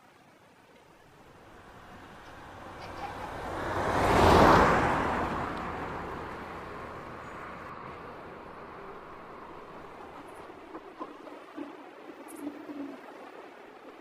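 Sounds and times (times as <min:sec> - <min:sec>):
vehicle passing by: 0:01.1 - 0:11.1.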